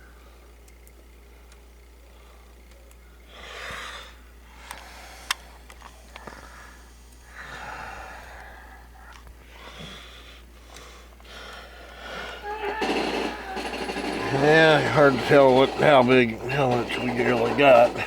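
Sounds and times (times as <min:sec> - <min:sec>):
person breathing: 0:03.2 - 0:13.7.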